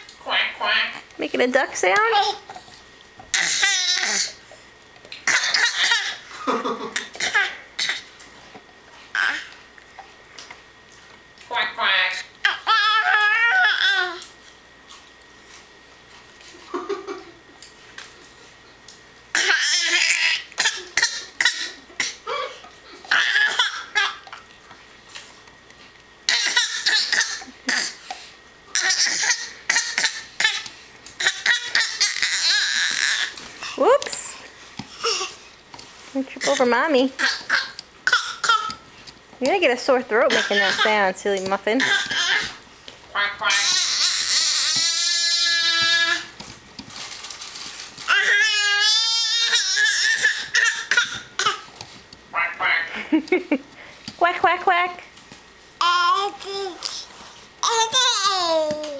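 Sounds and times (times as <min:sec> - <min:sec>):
toddler squealing and giggling: 0:05.3 - 0:06.2.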